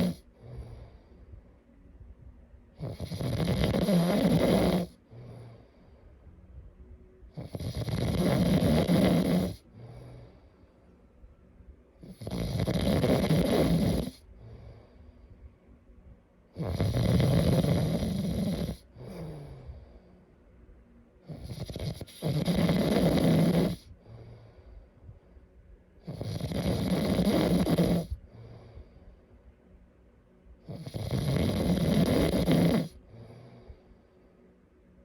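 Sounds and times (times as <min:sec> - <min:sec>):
person snoring: 0:00.0 - 0:01.0, 0:02.8 - 0:05.7, 0:07.4 - 0:10.4, 0:12.0 - 0:14.9, 0:16.6 - 0:19.9, 0:21.3 - 0:24.7, 0:26.0 - 0:28.9, 0:30.7 - 0:33.7
quiet breath out: 0:05.0 - 0:06.6, 0:09.6 - 0:11.2, 0:14.2 - 0:15.9, 0:18.8 - 0:20.6, 0:23.8 - 0:25.8, 0:28.1 - 0:29.6.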